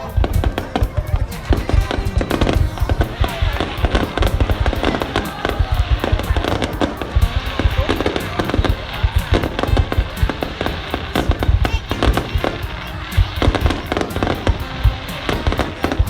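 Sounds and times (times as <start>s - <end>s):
music playing: 0.0s - 16.0s.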